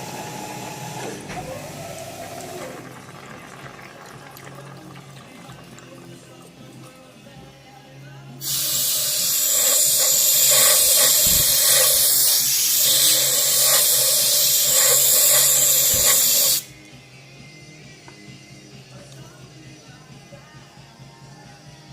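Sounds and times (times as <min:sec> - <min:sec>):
compressed air hissing: 0:08.4 - 0:16.7.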